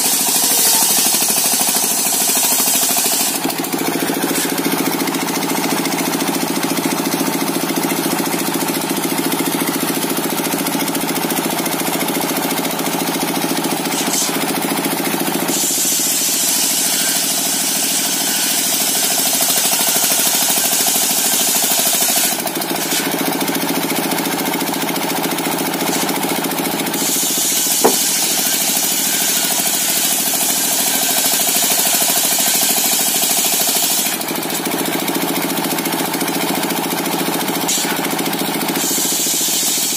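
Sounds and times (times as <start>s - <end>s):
saw blade cutting wood: 0.0s - 8.8s, 13.5s - 23.3s, 25.3s - 34.2s, 37.7s - 38.1s, 38.7s - 39.9s
circular saw engine running: 0.0s - 13.9s, 23.7s - 34.5s.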